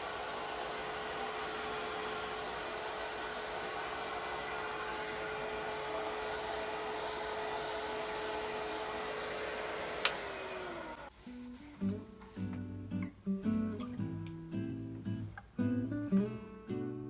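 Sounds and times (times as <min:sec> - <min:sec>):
hair dryer blowing: 0:00.0 - 0:11.7
hair dryer switch click: 0:09.9 - 0:10.4.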